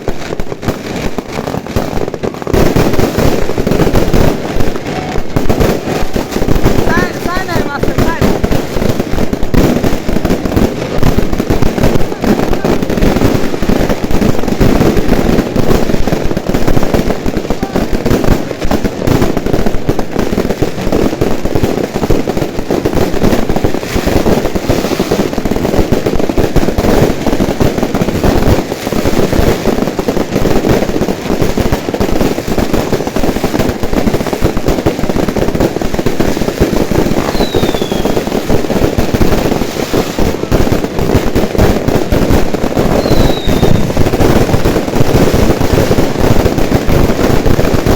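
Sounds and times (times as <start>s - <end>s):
fireworks bangs and crackles: 0.0s - 47.9s
falling whistle: 43.0s - 43.8s.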